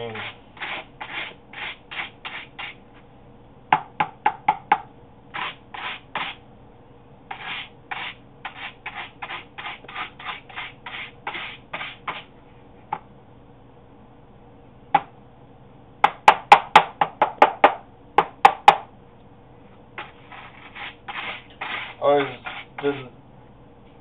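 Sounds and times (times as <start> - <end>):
brush scrubbing filter pleats: 20.0 - 23.1.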